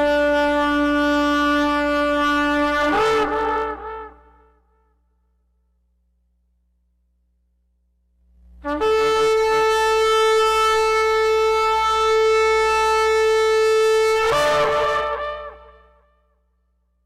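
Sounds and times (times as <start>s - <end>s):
long horn blast: 0.0s - 4.5s, 8.6s - 16.1s.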